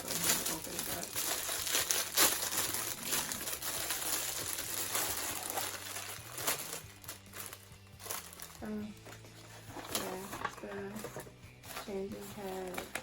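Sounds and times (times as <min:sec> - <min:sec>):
plastic packaging crinkling: 0:00.0 - 0:13.0.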